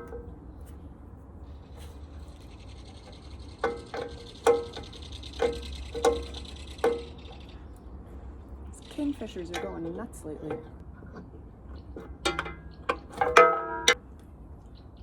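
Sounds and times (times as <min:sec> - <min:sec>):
metal-on-metal clanks: 0:00.0 - 0:00.4, 0:02.2 - 0:07.6, 0:09.0 - 0:14.0
bird rattling call: 0:01.9 - 0:07.7.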